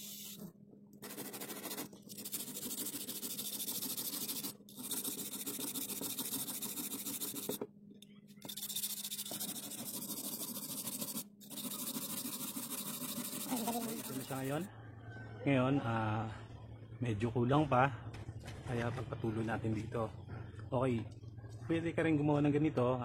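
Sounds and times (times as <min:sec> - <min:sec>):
knife blade scraping on abrasive: 0:08.4 - 0:14.5.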